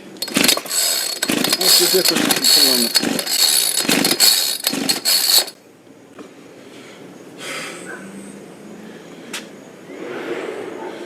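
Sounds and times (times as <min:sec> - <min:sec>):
chainsaw pull cord yanked: 0:00.0 - 0:05.6.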